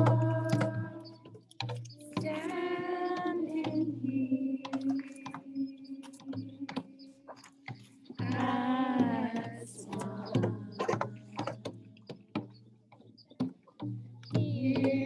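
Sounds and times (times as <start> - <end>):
irregular clicks and taps: 0.0 - 3.9, 4.6 - 15.0
voices singing: 0.0 - 12.5, 14.3 - 15.0.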